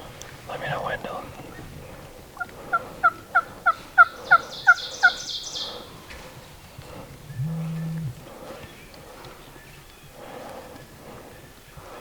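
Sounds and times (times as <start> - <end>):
turkey calling: 0.0 - 6.4
short low hum: 7.2 - 8.2.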